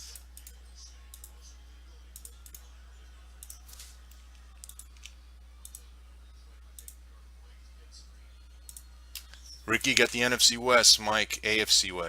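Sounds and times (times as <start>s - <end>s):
computer mouse clicks: 2.2s - 2.6s, 3.4s - 3.8s, 4.6s - 5.8s, 6.8s - 7.0s, 8.6s - 9.5s.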